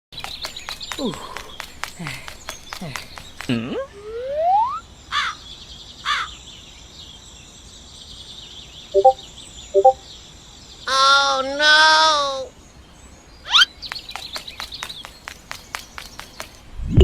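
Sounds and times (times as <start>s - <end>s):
birds chirping: 0.0s - 3.8s, 13.5s - 16.7s
bird harsh caw: 0.2s - 3.5s, 5.1s - 5.4s, 6.0s - 6.4s.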